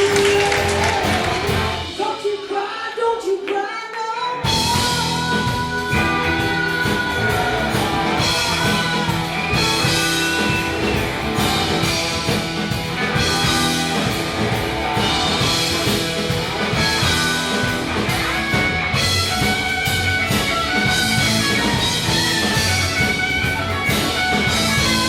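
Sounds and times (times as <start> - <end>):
rock band playing: 0.0 - 2.8, 4.4 - 25.0
person singing: 0.0 - 12.3.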